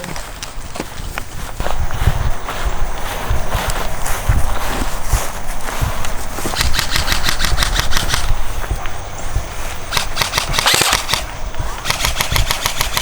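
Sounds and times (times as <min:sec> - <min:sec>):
airsoft rifle automatic fire: 0:06.6 - 0:08.3, 0:09.9 - 0:13.0.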